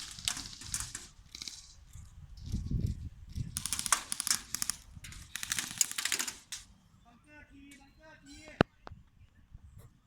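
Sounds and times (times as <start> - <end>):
airsoft guns firing bursts: 0.0 - 1.6, 3.5 - 6.7.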